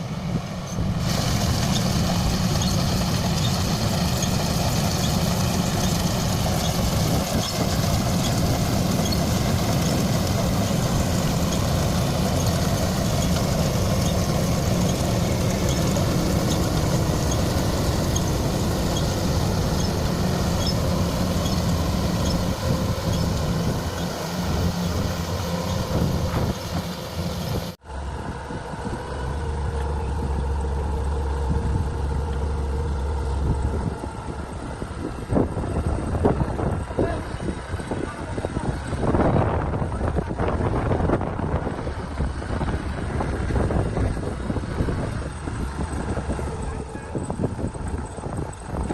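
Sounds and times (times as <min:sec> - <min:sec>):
heavy diesel machinery engine: 0:00.0 - 0:48.9
low steady engine hum: 0:00.0 - 0:48.9.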